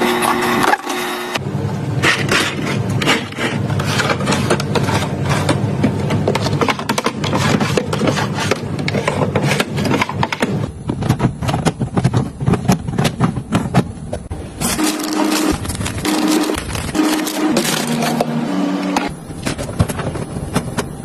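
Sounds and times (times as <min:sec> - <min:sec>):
household items tapping and rubbing: 0:02.0 - 0:18.3.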